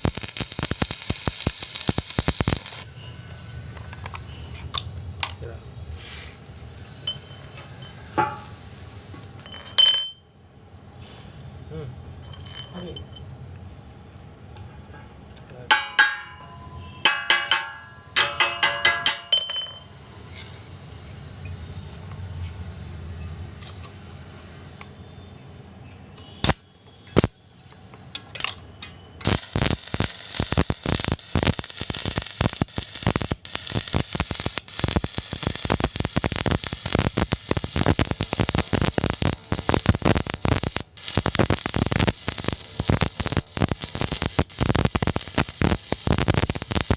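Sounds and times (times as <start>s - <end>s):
welding arc crackling: 0.0s - 4.9s, 26.3s - 27.4s, 29.2s - 46.9s
steel clinking when struck: 15.7s - 19.9s.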